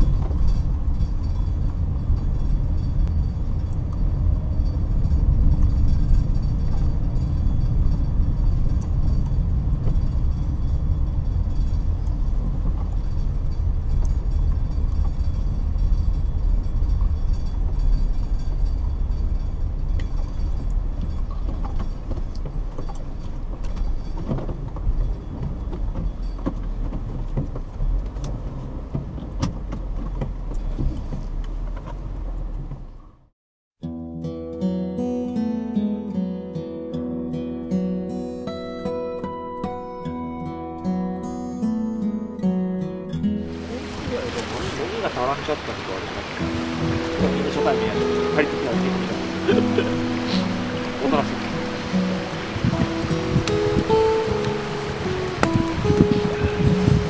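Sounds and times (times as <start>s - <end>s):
low rumble: 0.0s - 26.4s
campfire crackling: 43.3s - 57.0s.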